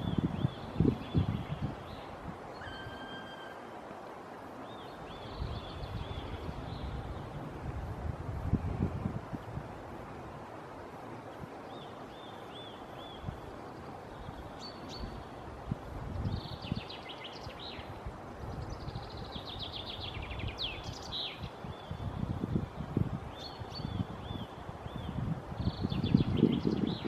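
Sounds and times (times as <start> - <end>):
trilled birdsong: 0.0 - 3.8, 11.2 - 15.4, 16.2 - 22.2
songbirds chirping: 0.0 - 27.0.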